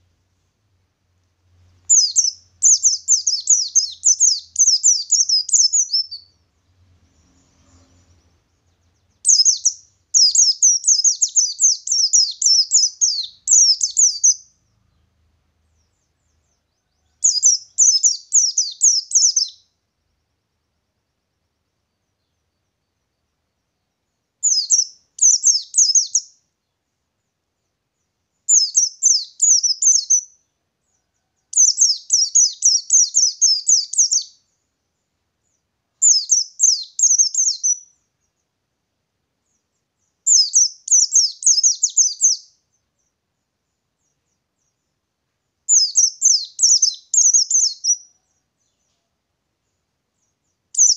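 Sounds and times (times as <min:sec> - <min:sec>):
bird chattering song: 0:01.8 - 0:06.4, 0:07.2 - 0:19.7, 0:24.4 - 0:26.4, 0:28.5 - 0:30.4, 0:31.6 - 0:34.6, 0:35.5 - 0:38.5, 0:39.5 - 0:43.2, 0:45.7 - 0:49.0, 0:49.7 - 0:50.9.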